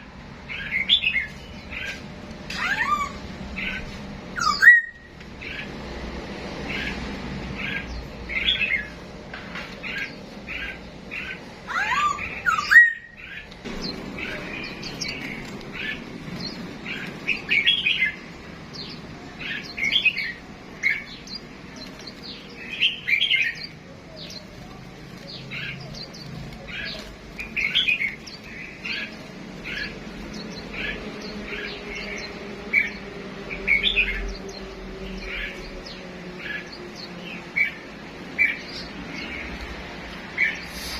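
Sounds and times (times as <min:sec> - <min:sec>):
caged songbirds chirping: 0:00.0 - 0:40.9.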